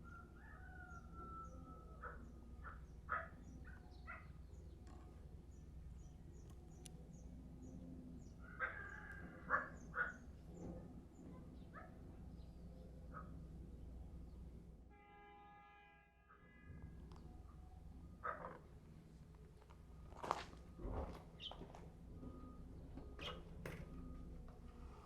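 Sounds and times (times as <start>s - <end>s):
small birds chirping: 0.4s - 13.6s, 21.3s - 21.8s, 22.4s - 23.6s
crows cawing: 8.4s - 10.2s.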